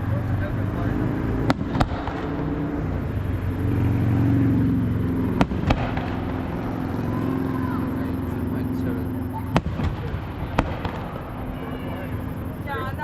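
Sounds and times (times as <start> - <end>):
firework bangs: 0.0 - 13.0.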